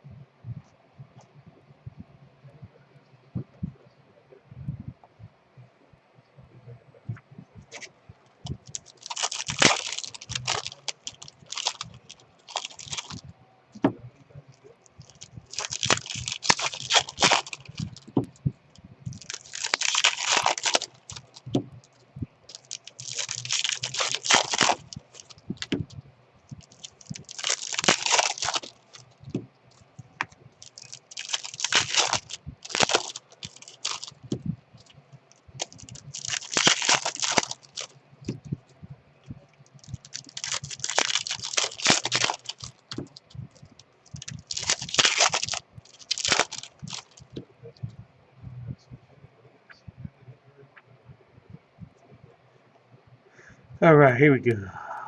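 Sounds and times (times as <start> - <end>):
small clicks and handling noises: 7.1 - 48.0
wrappers torn and crinkled: 7.8 - 14.0, 14.8 - 18.3, 19.1 - 38.4, 39.6 - 47.4.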